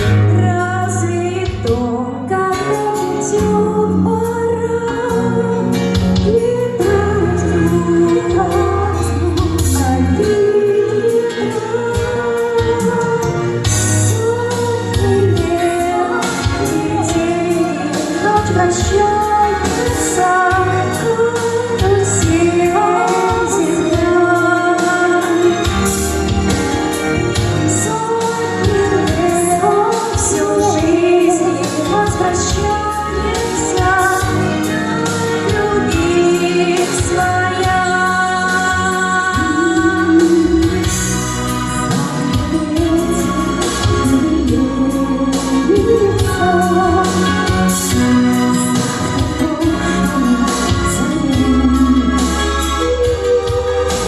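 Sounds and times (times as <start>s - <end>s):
pop song: 0.0s - 54.0s.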